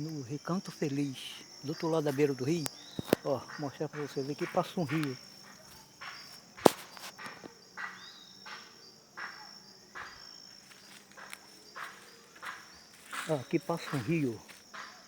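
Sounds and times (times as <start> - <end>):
insects chirping: 0.0 - 15.0
soft rustles: 4.5 - 7.5.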